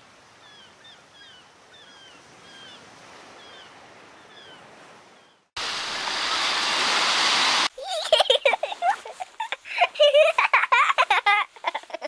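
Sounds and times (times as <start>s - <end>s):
loud rushing noise: 5.6s - 7.7s.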